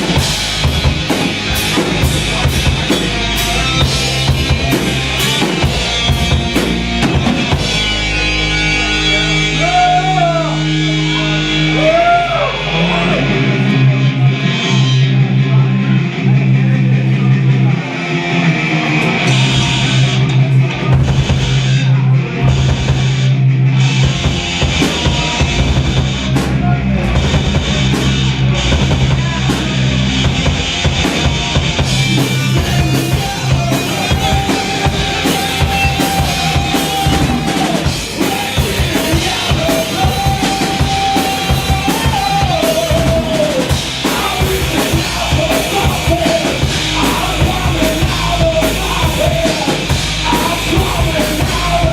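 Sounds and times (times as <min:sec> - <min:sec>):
drum kit: 0:00.0 - 0:17.8, 0:18.4 - 0:51.9
rock band playing: 0:00.0 - 0:51.9.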